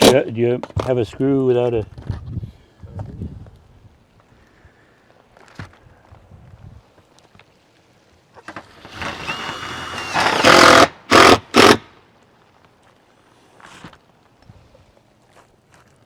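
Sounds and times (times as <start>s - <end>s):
power driver driving screw into metal: 8.9s - 11.9s.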